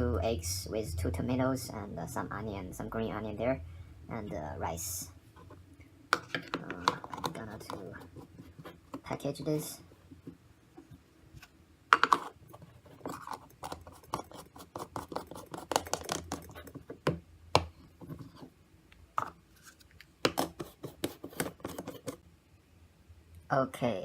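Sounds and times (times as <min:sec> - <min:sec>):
food jars clicking and tapping: 0:11.9 - 0:12.3.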